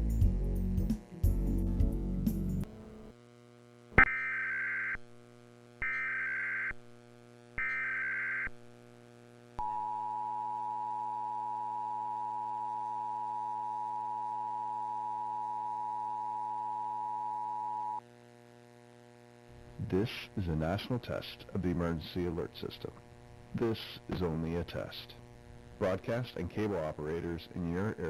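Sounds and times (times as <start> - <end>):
low steady hum: 2.4 - 4.1, 18.7 - 28.0.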